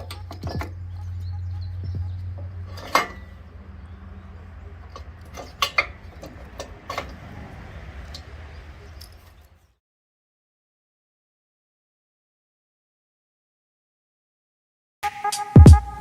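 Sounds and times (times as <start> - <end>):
metallic clanks and knocks: 0.0 - 9.4
diesel engine humming: 0.0 - 9.7, 15.1 - 16.0.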